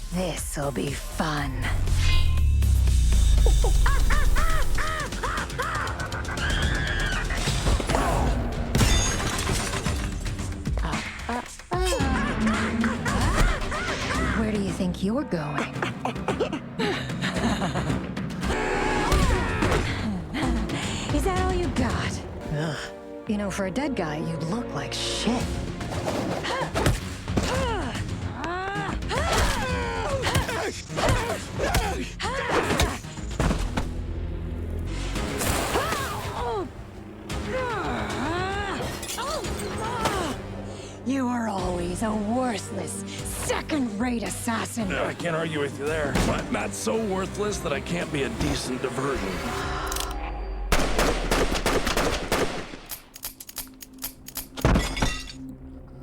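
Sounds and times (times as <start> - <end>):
rapid gunfire: 50.7 - 52.9
single gunshots: 50.7 - 52.9.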